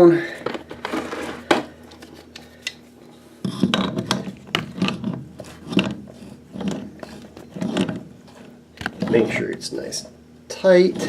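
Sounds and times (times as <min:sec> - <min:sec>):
coupling nut scraping on threads: 0:03.4 - 0:09.7, 0:10.6 - 0:11.0.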